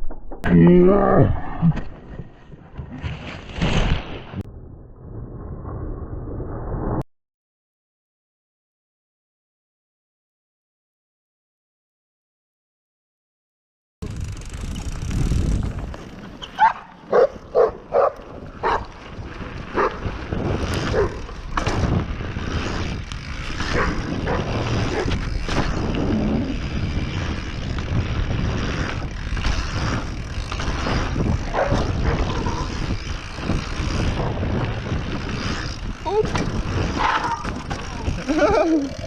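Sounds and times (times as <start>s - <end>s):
tyre noise: 14.0s - 39.0s
dog barking: 16.6s - 18.8s
wind rush: 17.3s - 39.0s.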